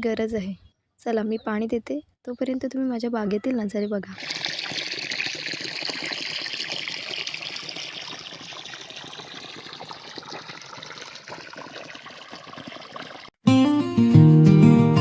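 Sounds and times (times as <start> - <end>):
water pouring onto ground: 4.2 - 13.3.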